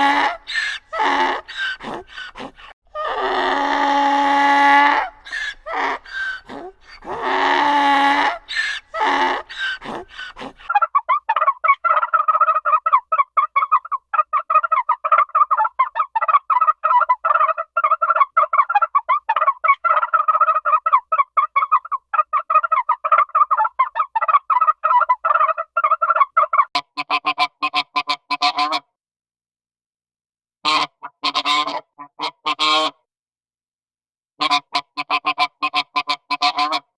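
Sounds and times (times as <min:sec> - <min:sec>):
waterfowl honking: 0:30.7 - 0:33.0, 0:34.4 - 0:36.9.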